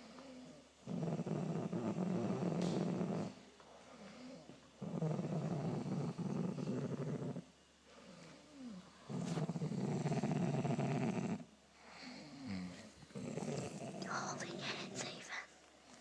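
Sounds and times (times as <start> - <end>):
person snoring: 12.0 - 15.4.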